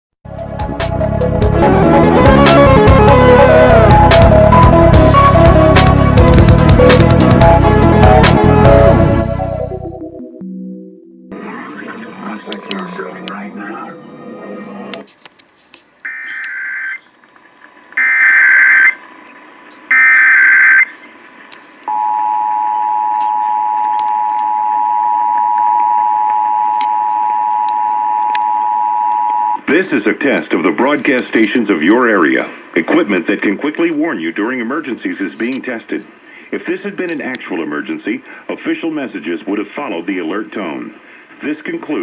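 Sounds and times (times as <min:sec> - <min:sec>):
radio music with quick beat: 0:11.3 - 0:15.1
buzzy data tone bursts: 0:18.0 - 0:19.0.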